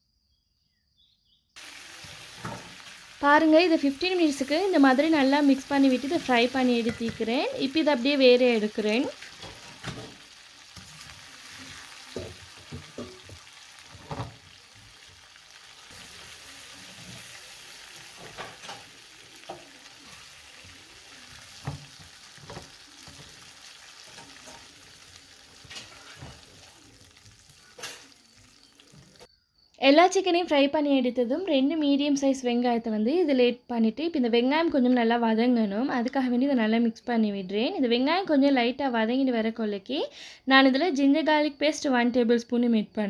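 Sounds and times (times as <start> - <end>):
chicken sizzling in oil: 1.6 - 29.3
utensil knocking on pan: 6.8 - 7.3, 12.1 - 13.4.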